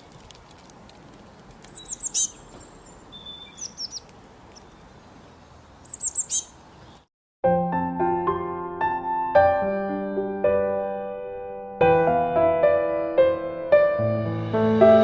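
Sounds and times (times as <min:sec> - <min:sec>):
small bird chirping: 0:01.6 - 0:07.1.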